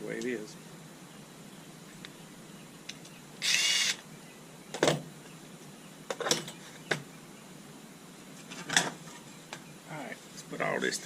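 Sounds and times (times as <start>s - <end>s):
short rasping whirr: 3.4s - 4.0s.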